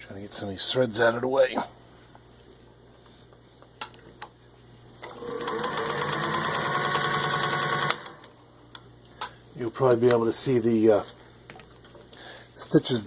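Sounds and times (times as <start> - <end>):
sewing machine stitching: 5.0 - 8.3.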